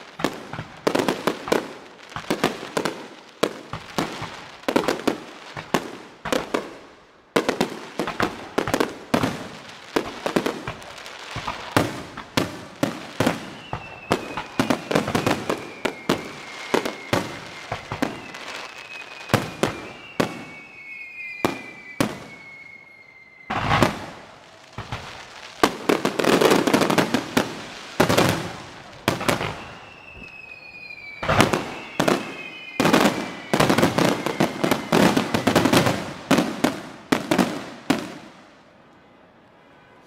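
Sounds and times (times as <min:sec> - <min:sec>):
fireworks bangs: 0:00.0 - 0:38.9
fireworks crackling: 0:00.0 - 0:38.9
faint falling whistle: 0:13.2 - 0:25.0, 0:28.5 - 0:36.4.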